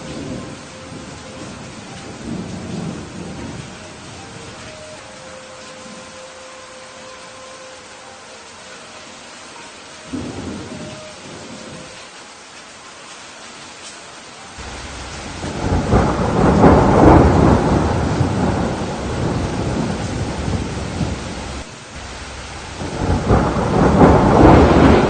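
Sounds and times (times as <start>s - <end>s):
thunder rumbling: 0.0s - 6.1s, 10.1s - 11.9s, 14.6s - 25.0s
rain falling: 0.0s - 25.0s.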